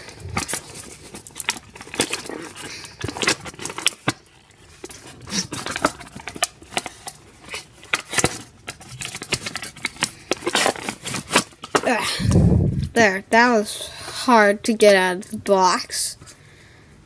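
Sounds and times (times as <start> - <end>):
packaging clicks and crinkles: 0.0 - 11.9.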